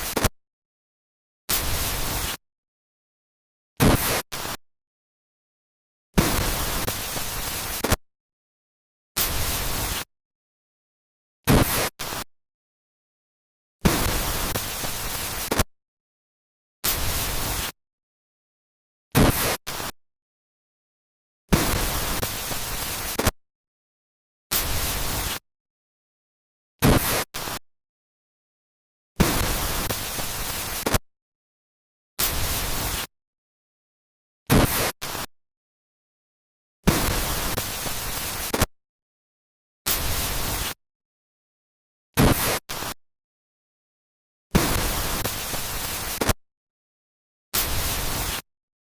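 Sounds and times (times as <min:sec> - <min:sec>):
static noise bursts: 0:01.6 - 0:02.4, 0:03.8 - 0:04.6, 0:06.2 - 0:08.0, 0:09.2 - 0:10.1, 0:11.5 - 0:12.3, 0:13.8 - 0:15.7, 0:16.8 - 0:17.8, 0:19.2 - 0:19.9, 0:21.5 - 0:23.4, 0:24.5 - 0:25.4, 0:26.8 - 0:27.6, 0:29.2 - 0:31.0, 0:32.2 - 0:33.1, 0:34.5 - 0:35.3, 0:36.9 - 0:38.7, 0:39.9 - 0:40.8, 0:44.6 - 0:46.4, 0:47.6 - 0:48.5.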